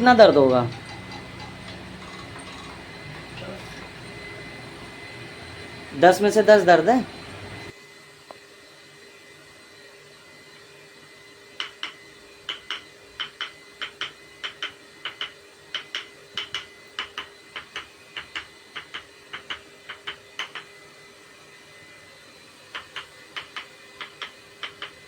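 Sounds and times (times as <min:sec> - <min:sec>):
faint steady hum: 0:00.0 - 0:07.7
sharp clicks in quick pairs: 0:11.6 - 0:20.7, 0:22.7 - 0:25.0.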